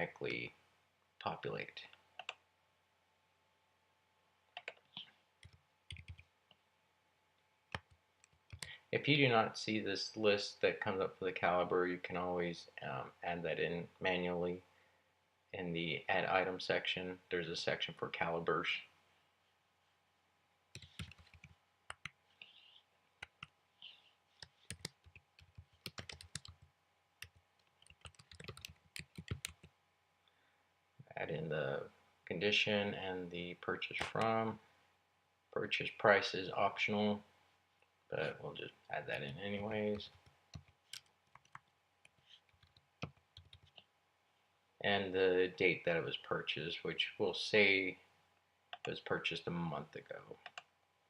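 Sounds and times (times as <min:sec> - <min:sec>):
typing on a computer keyboard: 0:05.4 - 0:06.3, 0:07.7 - 0:08.7, 0:20.8 - 0:22.2, 0:24.4 - 0:29.7, 0:39.9 - 0:41.7, 0:42.5 - 0:43.8.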